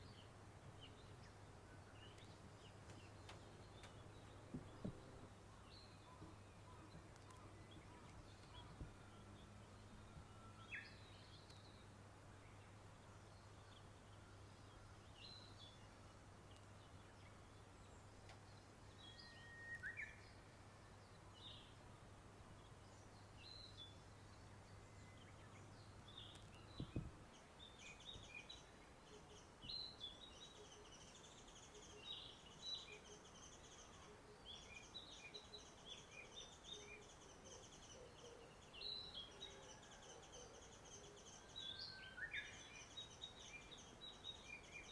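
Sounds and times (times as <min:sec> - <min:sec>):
songbirds chirping: 0:00.0 - 0:44.9
click: 0:18.2 - 0:18.4.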